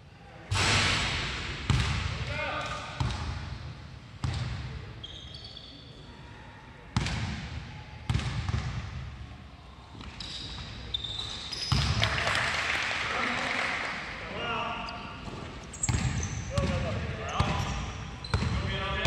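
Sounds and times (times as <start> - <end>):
sneakers squeaking: 4.2 - 6.2, 9.8 - 12.2, 14.7 - 19.0.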